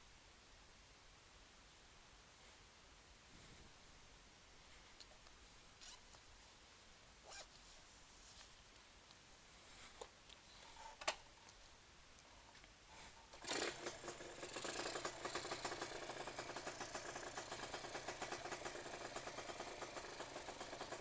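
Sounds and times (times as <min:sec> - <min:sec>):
two-stroke motorcycle idling: 0:13.4 - 0:21.0.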